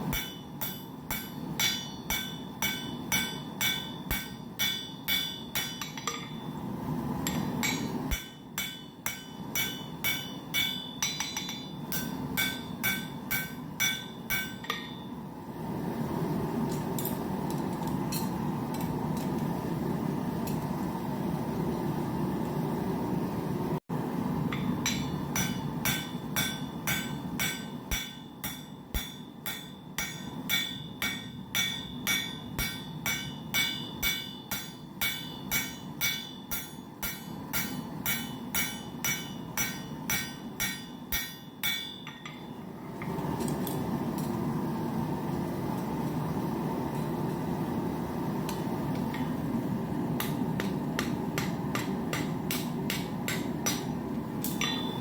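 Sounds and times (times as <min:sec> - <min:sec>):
hammer striking steel on anvil: 0:00.0 - 0:06.6, 0:07.2 - 0:15.2, 0:24.5 - 0:42.7, 0:50.2 - 0:55.0.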